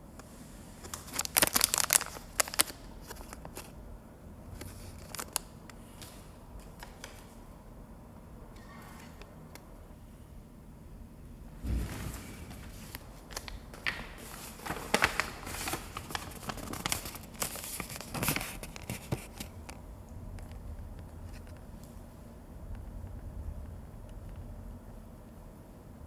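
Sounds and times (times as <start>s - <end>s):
rustling of handled things: 11.6s - 19.8s.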